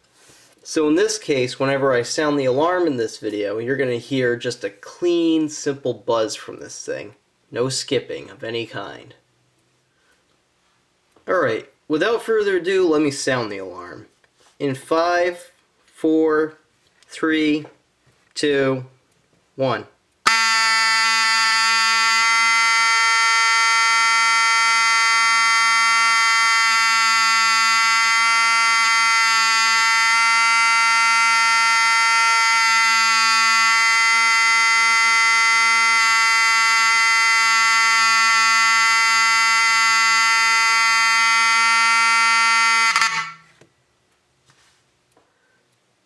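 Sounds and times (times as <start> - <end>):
fire alarm horn buzzing: 20.2 - 43.5.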